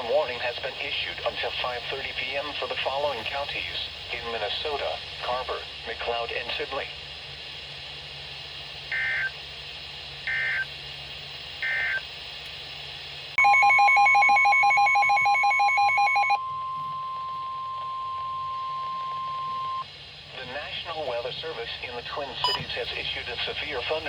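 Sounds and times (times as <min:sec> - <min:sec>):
rapid pulsing two-pitch beep: 0:13.4 - 0:19.8, 0:22.4 - 0:22.6.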